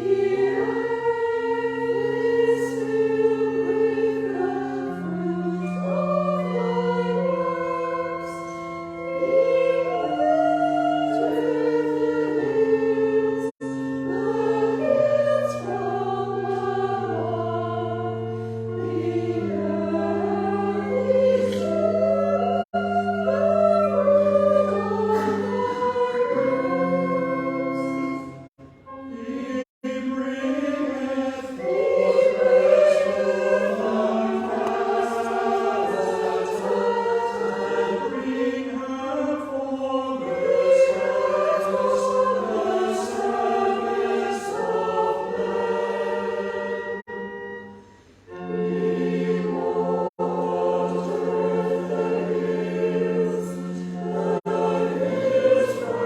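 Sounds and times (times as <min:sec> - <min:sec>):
choir singing in harmony: 0:00.0 - 0:56.0.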